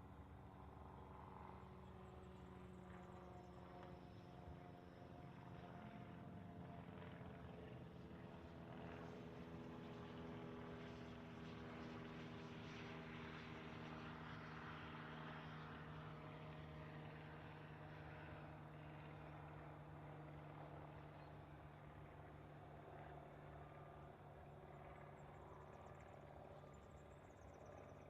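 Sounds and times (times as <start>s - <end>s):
aircraft engine drone: 0.0s - 28.0s.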